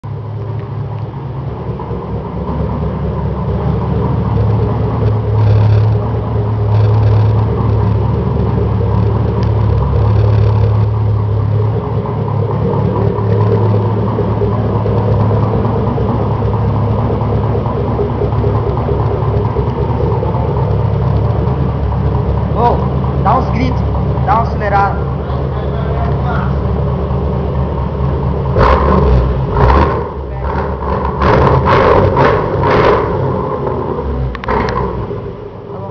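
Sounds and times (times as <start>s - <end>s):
truck engine idling: 0.0s - 35.9s.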